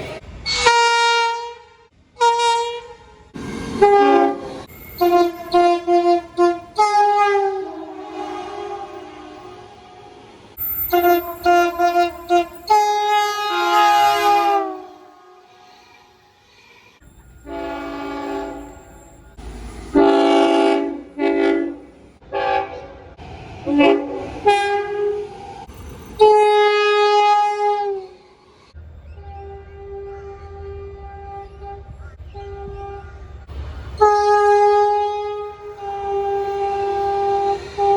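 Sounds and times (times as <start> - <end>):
train horn blasts: 0.4 - 16.5, 17.4 - 19.1, 19.9 - 25.4, 26.2 - 28.4, 29.1 - 33.4, 34.0 - 37.9.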